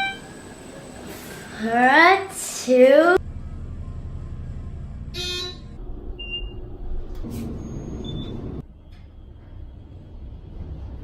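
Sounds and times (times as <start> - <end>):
short buzzing tone: 0.0 - 0.5, 5.1 - 6.7
elevator low rumble: 0.0 - 11.0.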